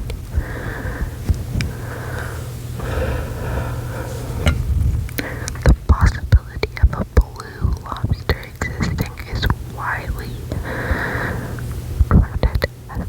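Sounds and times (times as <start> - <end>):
steady low rumble: 0.0 - 13.0
mouth clicks: 4.5 - 10.6, 12.0 - 13.0
person whispering close to microphone: 5.2 - 10.7, 12.0 - 13.0.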